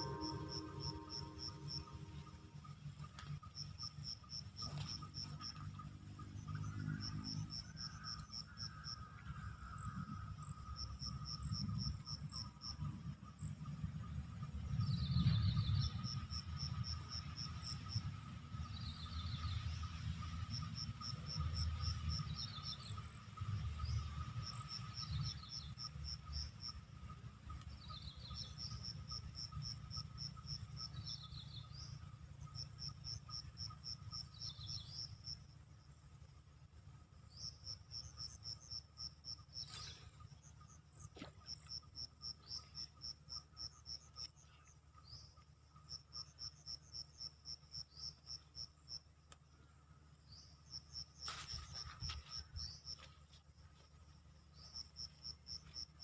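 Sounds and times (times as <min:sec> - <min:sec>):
steady high drone: 0:00.0 - 0:18.6
insects chirping: 0:00.0 - 0:56.0.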